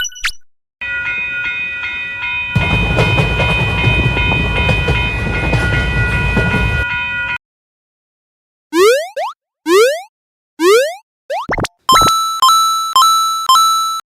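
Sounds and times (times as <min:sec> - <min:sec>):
train rumble: 0:01.0 - 0:07.4
wheels clattering on rail joints: 0:02.5 - 0:06.8.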